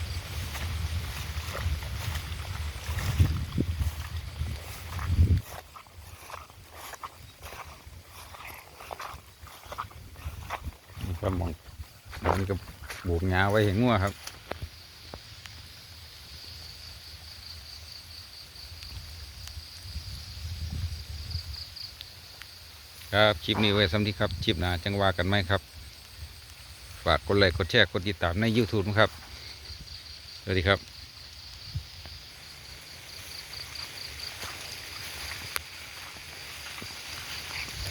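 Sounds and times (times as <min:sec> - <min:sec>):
low rumbling microphone noise: 0:00.0 - 0:13.5
insects trilling: 0:00.0 - 0:37.9.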